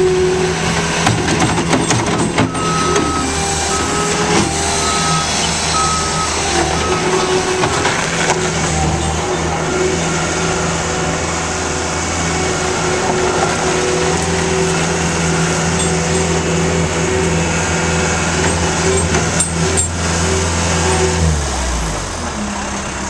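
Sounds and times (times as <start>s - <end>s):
diesel engine running at high revs: 0.0s - 23.0s.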